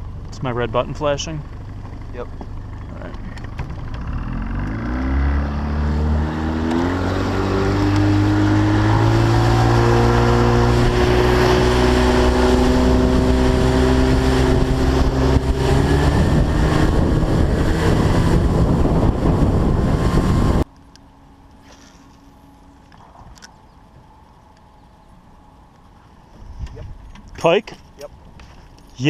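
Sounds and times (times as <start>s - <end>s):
boat motor running: 0.0s - 28.3s
wind on microphone: 4.9s - 20.7s.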